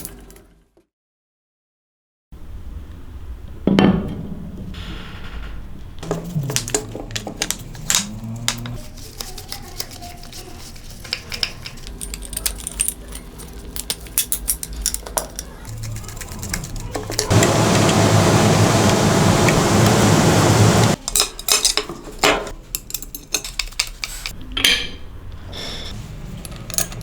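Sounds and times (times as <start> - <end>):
metal parts clinking: 11.2 - 15.5, 26.4 - 27.0.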